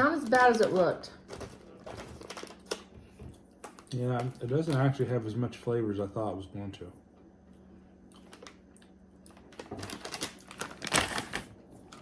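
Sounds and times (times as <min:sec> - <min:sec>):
crispy snack crunching: 0:08.1 - 0:12.0.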